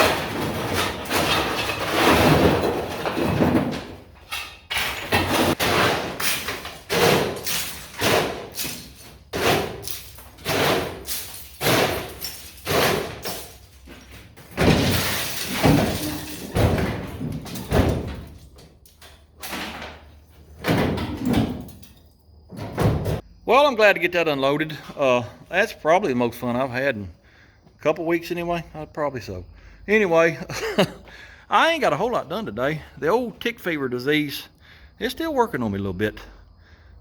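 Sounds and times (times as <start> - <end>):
bricks clattering onto a pile: 0.0 - 18.6.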